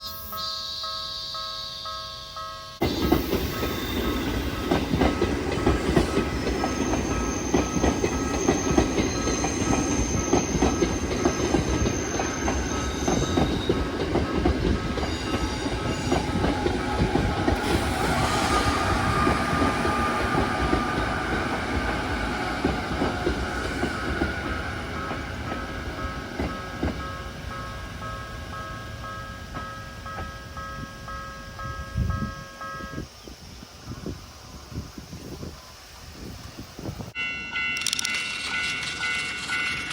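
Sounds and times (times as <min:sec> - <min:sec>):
level crossing warning bell: 0:00.0 - 0:17.7, 0:18.5 - 0:33.1, 0:37.1 - 0:39.9
train wheels clacking over rail joints: 0:02.8 - 0:27.6, 0:37.8 - 0:39.9.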